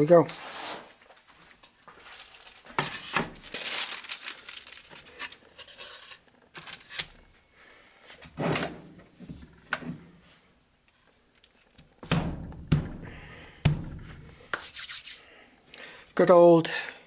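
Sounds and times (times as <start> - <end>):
rustling and scraping: 0.2 - 7.2.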